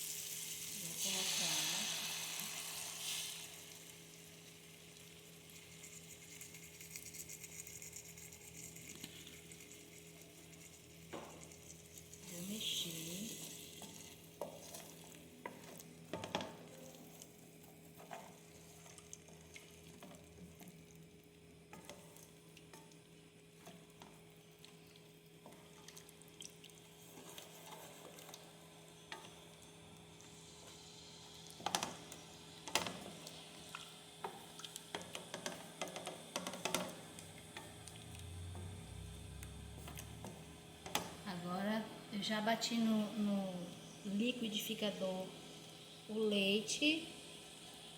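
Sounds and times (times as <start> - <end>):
faint sizzle: 0.0 - 47.9
spoon stirring in a pan: 13.4 - 20.8, 21.7 - 30.9, 31.6 - 38.0.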